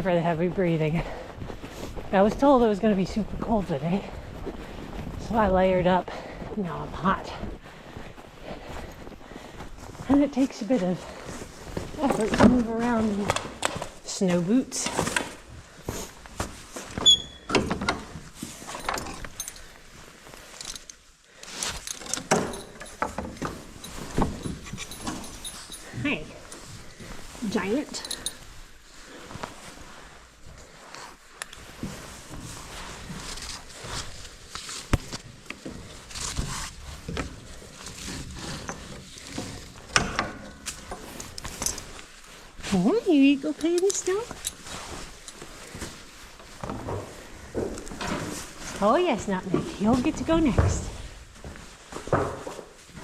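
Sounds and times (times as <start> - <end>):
footsteps in snow boots: 0.0 - 17.2, 23.3 - 53.0
knocks and rustles: 10.0 - 20.9, 21.5 - 30.6, 31.4 - 53.0.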